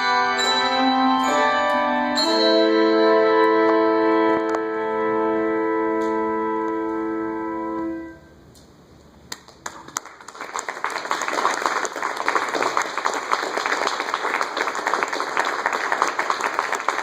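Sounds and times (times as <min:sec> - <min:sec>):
audience applause: 0:09.4 - 0:17.0.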